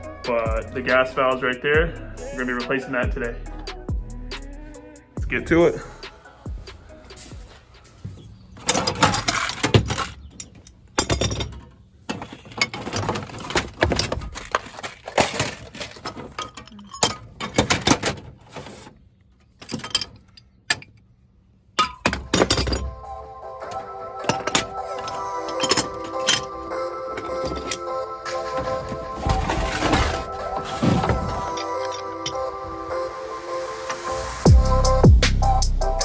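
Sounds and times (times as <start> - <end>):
background music with steady tones: 0.0 - 9.6, 22.0 - 36.0
hard equipment clattering: 6.5 - 18.8, 21.8 - 32.5.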